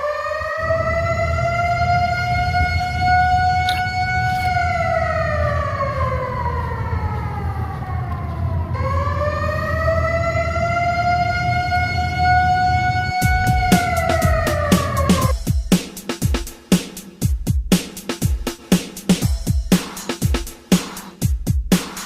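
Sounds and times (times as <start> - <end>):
siren-like wail: 0.0 - 15.3
steady low rumble: 0.6 - 15.4.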